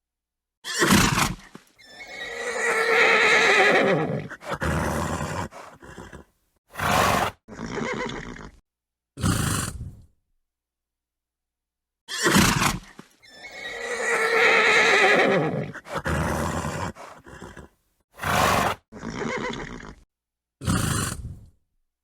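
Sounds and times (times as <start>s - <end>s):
horse whinnying: 0.6s - 8.6s, 12.1s - 20.0s
horse snorting: 0.8s - 8.6s, 9.2s - 10.1s, 12.2s - 20.0s, 20.6s - 21.6s.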